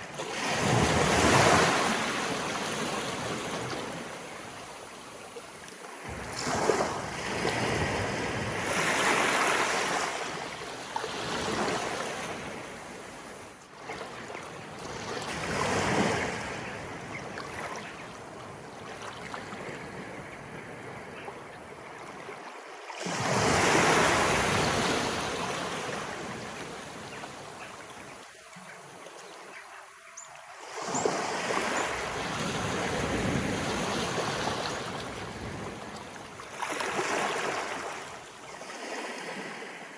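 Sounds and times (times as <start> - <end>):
sea waves washing up: 30.6 - 39.8.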